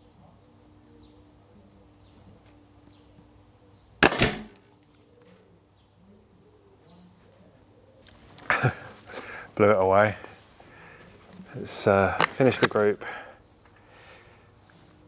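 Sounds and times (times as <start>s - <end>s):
air rifle firing: 4.0s - 4.6s.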